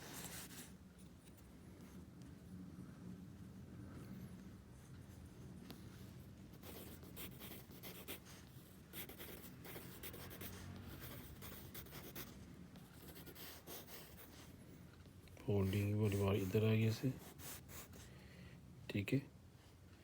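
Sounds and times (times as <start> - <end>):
low room hum: 0.0 - 20.0
pen scratching on paper: 6.5 - 14.5, 15.5 - 18.0.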